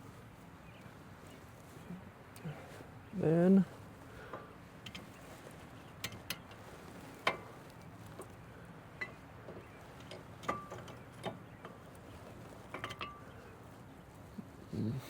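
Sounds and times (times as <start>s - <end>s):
light metal clinks: 9.0s - 13.8s.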